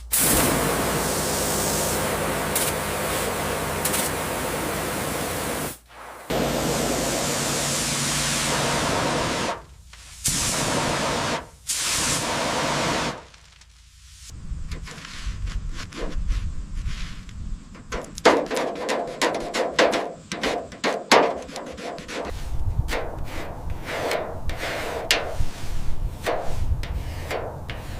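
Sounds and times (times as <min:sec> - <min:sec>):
low rumble: 0:00.0 - 0:11.7
spraying hiss: 0:00.0 - 0:14.3.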